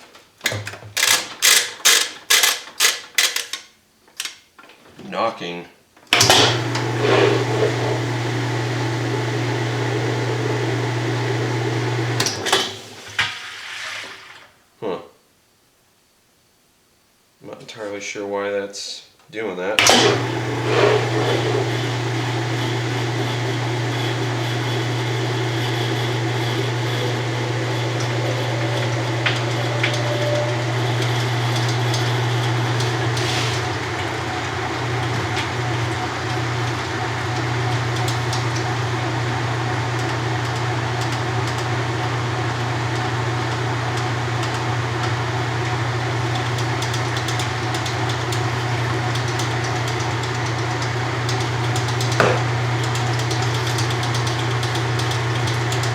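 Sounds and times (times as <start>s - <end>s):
washing machine motor hum: 6.1s - 13.2s, 19.8s - 55.9s.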